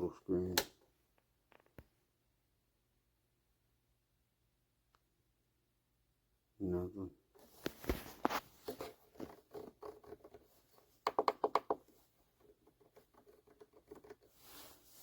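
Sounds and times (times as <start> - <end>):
handling clicks and scratches: 7.4 - 15.0.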